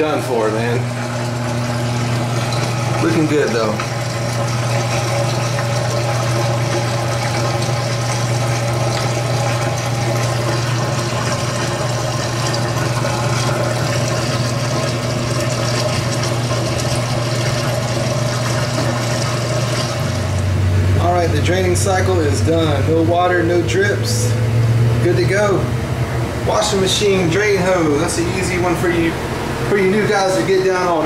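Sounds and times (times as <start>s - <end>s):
drain pump humming: 0.0s - 31.0s
water rushing through hose: 0.4s - 24.4s.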